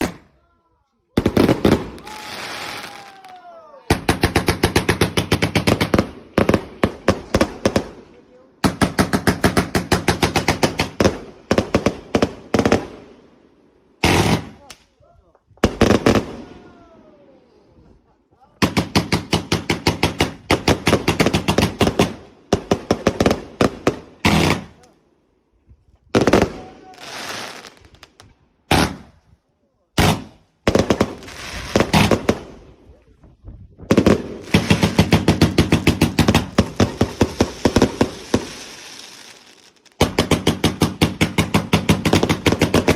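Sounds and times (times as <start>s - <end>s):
fireworks bangs: 1.1s - 13.0s, 30.0s - 32.7s, 33.8s - 42.9s
firework bangs: 33.8s - 42.9s.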